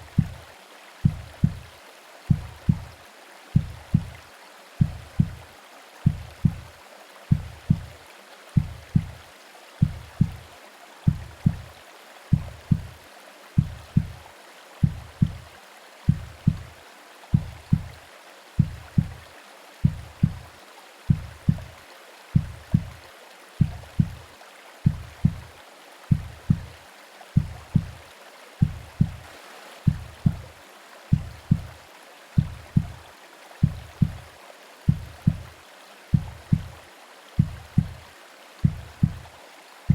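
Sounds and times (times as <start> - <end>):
heartbeat double thump: 0.0 - 0.4, 1.0 - 1.7, 2.3 - 3.0, 3.6 - 4.2, 4.8 - 5.4, 6.1 - 6.7, 7.3 - 8.0, 8.6 - 9.2, 9.8 - 10.5, 11.1 - 11.7, 12.3 - 13.0, 13.6 - 14.2, 14.8 - 15.5, 16.1 - 16.7, 17.3 - 18.0, 18.6 - 20.5, 21.1 - 21.8, 22.4 - 23.0, 23.6 - 24.2, 24.8 - 25.5, 26.1 - 26.8, 27.4 - 28.0, 28.6 - 29.2, 29.9 - 30.5, 31.1 - 31.8, 32.4 - 33.0, 33.6 - 34.3, 34.9 - 35.5, 36.1 - 36.8, 37.4 - 39.3
rain: 0.0 - 39.9
white noise hiss: 0.0 - 39.9.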